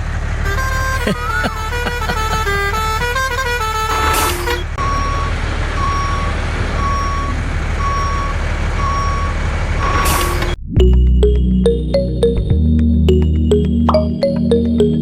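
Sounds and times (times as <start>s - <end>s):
truck engine rumble: 0.0s - 14.9s
reversing beeps: 4.8s - 10.9s.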